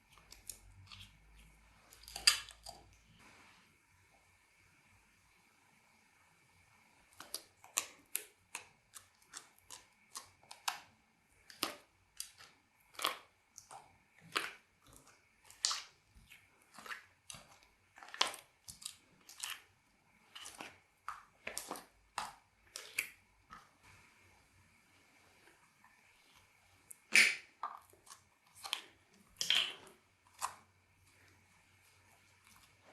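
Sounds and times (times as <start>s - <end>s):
slime squishing with pops: 7.1s - 23.8s, 26.9s - 30.8s.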